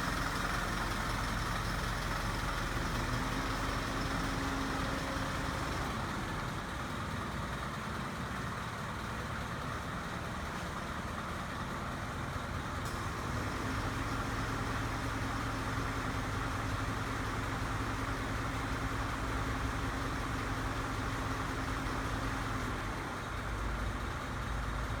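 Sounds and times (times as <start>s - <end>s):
truck engine idling: 0.0s - 25.0s.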